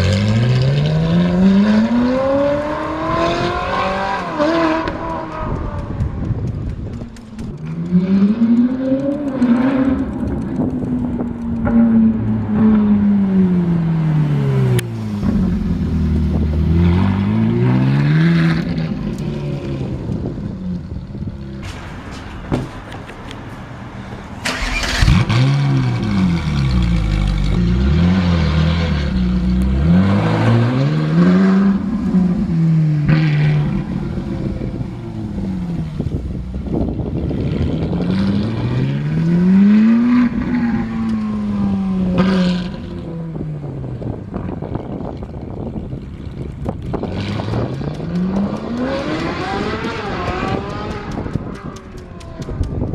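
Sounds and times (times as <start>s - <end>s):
loud engine rev: 0.0s - 5.3s, 24.5s - 34.8s, 47.0s - 51.8s
sports car engine: 0.0s - 52.9s.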